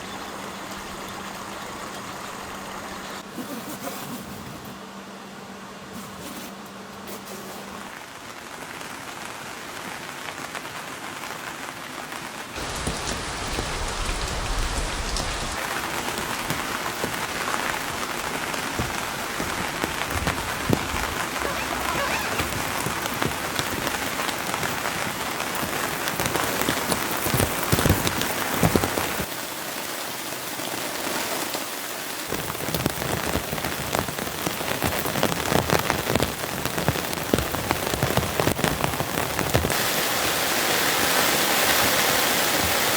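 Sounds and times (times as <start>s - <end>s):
raindrop ticks: 0.0s - 3.2s, 12.6s - 29.3s, 32.3s - 39.8s
steady rain hissing: 0.0s - 3.6s, 4.2s - 42.9s.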